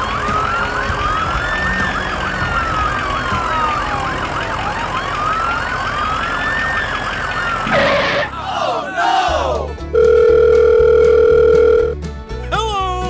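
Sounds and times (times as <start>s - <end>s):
siren fast warbling yelp: 0.0s - 9.2s
siren wail: 0.0s - 9.2s.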